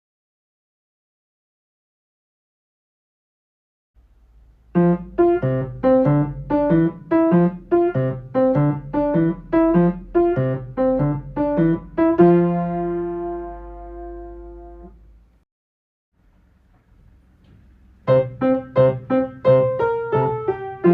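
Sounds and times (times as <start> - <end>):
piano playing a simple tune: 4.7 - 15.0, 18.0 - 20.9.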